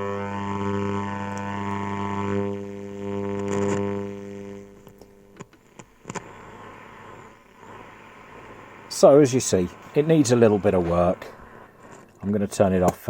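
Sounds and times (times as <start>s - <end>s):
radio mains hum: 0.0s - 13.0s
sharp clicks: 4.8s - 6.4s.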